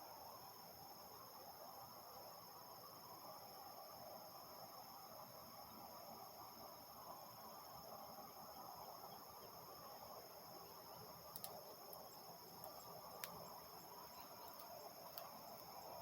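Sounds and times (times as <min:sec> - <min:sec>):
crickets trilling: 0:00.0 - 0:16.0
distant machinery hum: 0:05.7 - 0:16.0.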